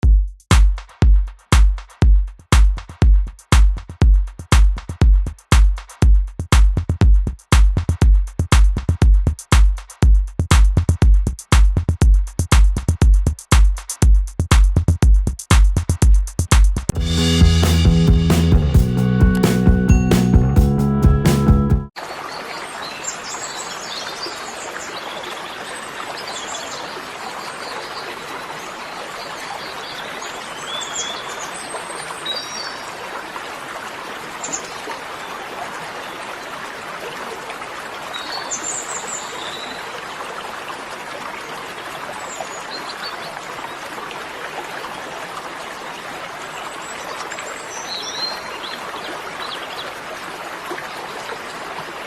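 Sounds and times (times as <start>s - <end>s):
birds chirping: 21.5s - 33.0s
stream flowing: 21.9s - 52.0s.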